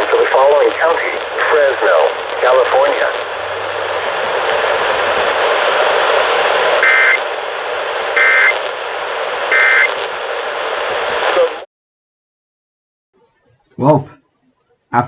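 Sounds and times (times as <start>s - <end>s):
radio static: 0.0s - 11.7s.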